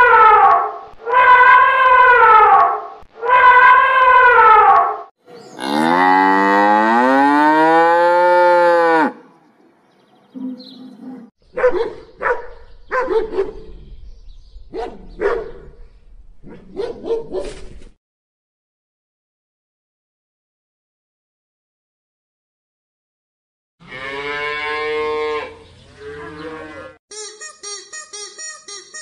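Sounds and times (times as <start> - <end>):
cow mooing: 5.6 - 9.3, 23.8 - 27.0.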